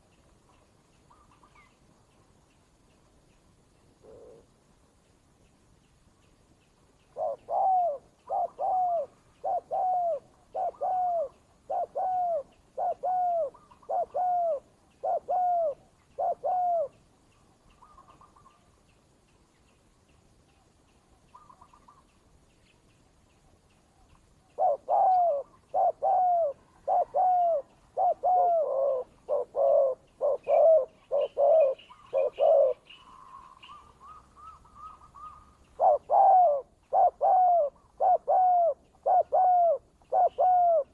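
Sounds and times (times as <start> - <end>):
faint high chirps: 0.0 - 39.3
doves cooing: 4.0 - 4.5, 7.1 - 17.0, 24.6 - 40.9.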